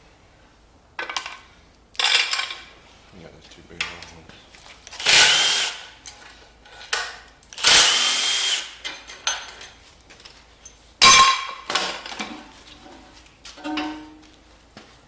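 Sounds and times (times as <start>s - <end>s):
power tool whining: 5.0s - 5.9s, 7.6s - 8.8s
sharp metallic clank: 11.0s - 12.0s, 13.6s - 14.2s.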